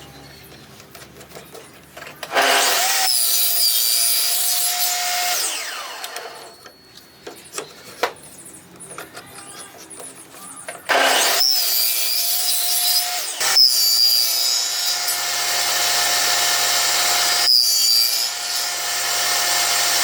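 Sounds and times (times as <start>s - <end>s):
power tool cutting wood: 2.2s - 6.6s, 10.9s - 20.0s.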